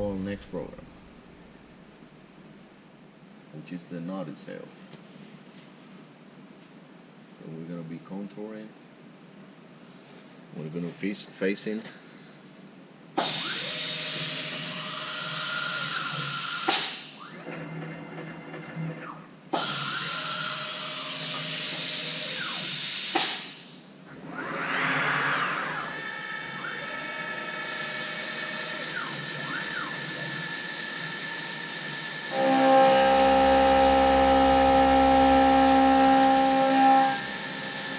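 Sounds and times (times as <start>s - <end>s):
steady machine whine: 0.0s - 1.9s, 13.2s - 37.9s
milling machine cutting: 13.2s - 16.7s, 24.2s - 37.9s.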